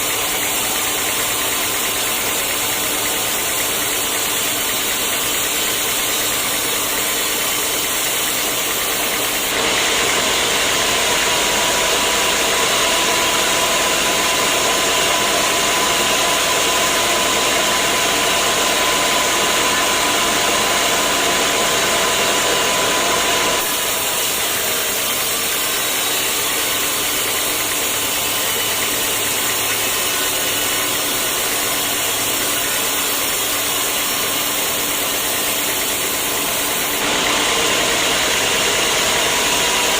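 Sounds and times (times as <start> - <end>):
saw whine: 0.0 - 39.9
sawmill machinery running: 0.0 - 39.9.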